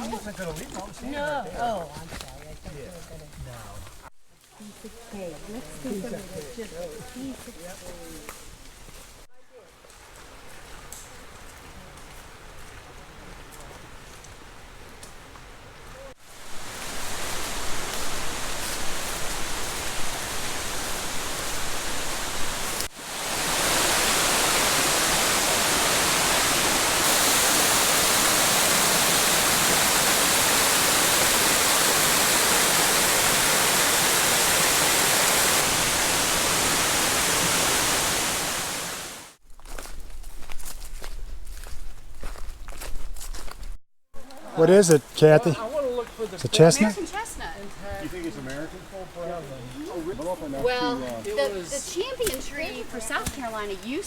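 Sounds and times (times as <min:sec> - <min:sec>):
loud rushing noise: 0:16.5 - 0:39.3.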